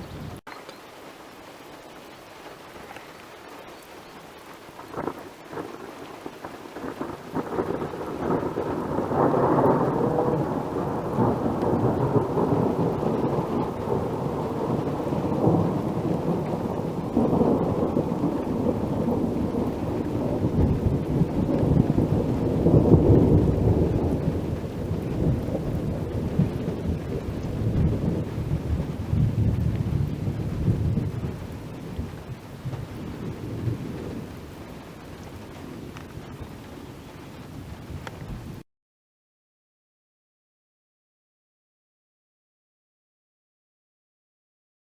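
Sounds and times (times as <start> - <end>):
thunder rumbling: 0.0 - 0.4, 4.3 - 38.6
rain falling: 0.0 - 38.6.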